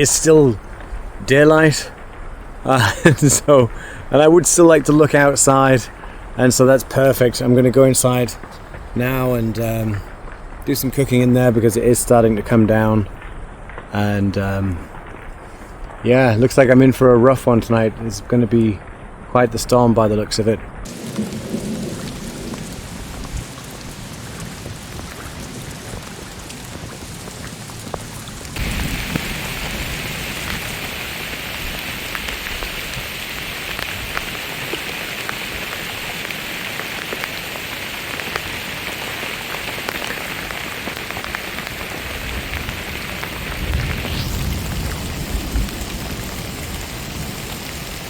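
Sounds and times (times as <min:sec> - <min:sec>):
heavy rain on a tent: 0:00.0 - 0:17.9, 0:20.8 - 0:48.0
low thunder rumble: 0:20.6 - 0:34.4, 0:41.8 - 0:48.0.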